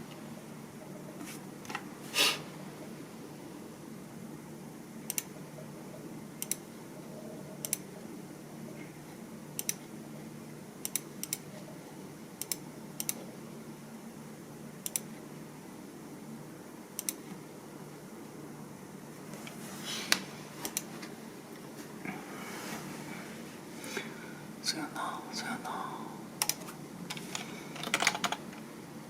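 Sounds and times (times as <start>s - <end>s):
steady low hum: 0.0s - 29.0s
computer keyboard keystrokes: 7.6s - 7.9s, 9.6s - 9.8s, 12.4s - 13.2s, 14.8s - 15.1s, 17.0s - 17.2s, 26.4s - 28.6s.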